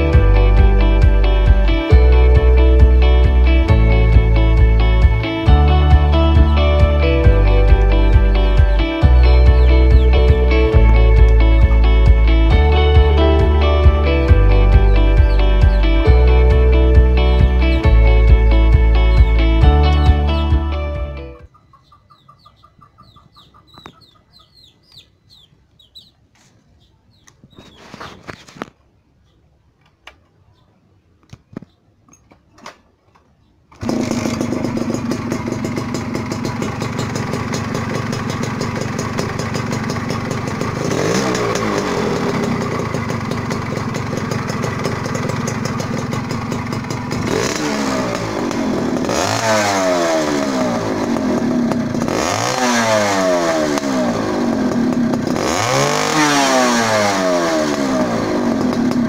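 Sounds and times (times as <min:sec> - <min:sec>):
motorcycle engine revving: 0:00.0 - 0:21.5, 0:33.7 - 0:59.0.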